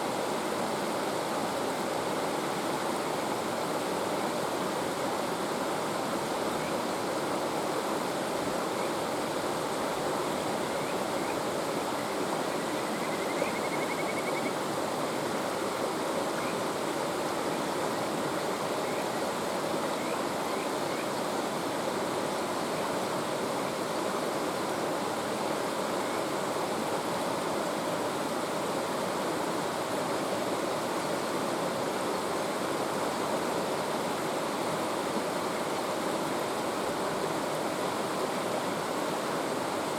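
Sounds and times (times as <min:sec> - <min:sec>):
mountain stream rushing: 0:00.0 - 0:39.9
frog calling and trilling: 0:12.0 - 0:14.6.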